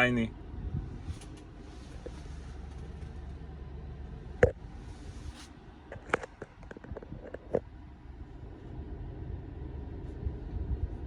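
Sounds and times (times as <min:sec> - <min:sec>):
low steady rumble: 0:00.0 - 0:11.0.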